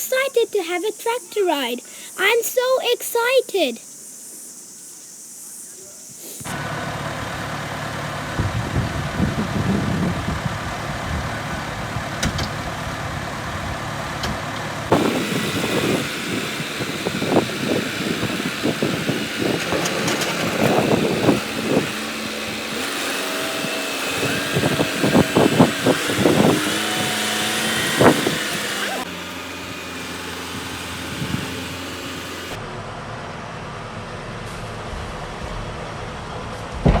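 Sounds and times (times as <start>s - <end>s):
tractor engine running: 6.4s - 32.8s
engine knocking and clattering: 6.5s - 32.6s.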